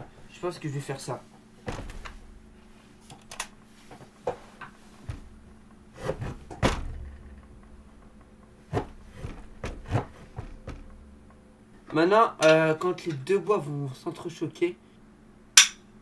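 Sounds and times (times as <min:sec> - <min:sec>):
objects knocking and clicking: 0:05.1 - 0:12.6.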